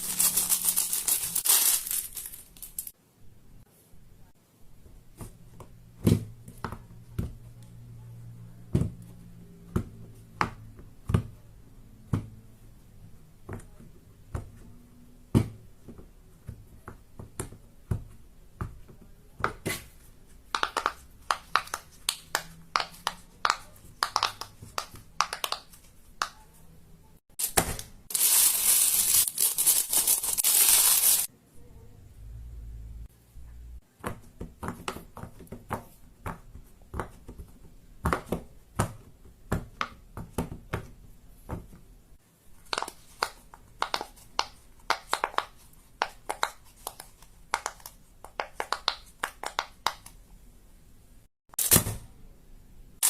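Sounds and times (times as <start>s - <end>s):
loud crinkling and crushing: 0.0s - 2.9s, 27.4s - 31.3s.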